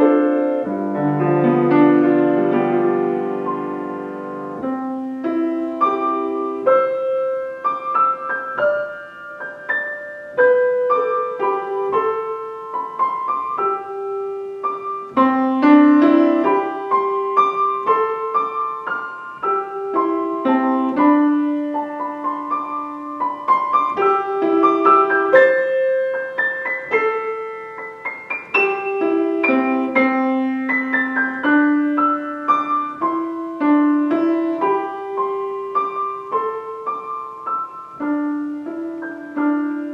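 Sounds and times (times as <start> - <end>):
solo piano melody: 0.0 - 39.9.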